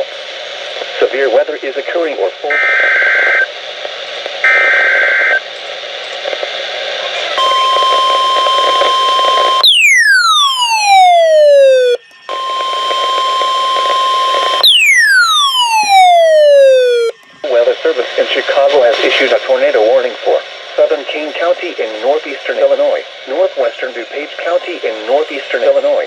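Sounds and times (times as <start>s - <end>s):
radio static: 0.0s - 26.0s
buzzy data burst: 7.3s - 20.1s
falling electronic siren sweep: 7.4s - 17.1s
steady warning alarm tone: 7.4s - 19.4s.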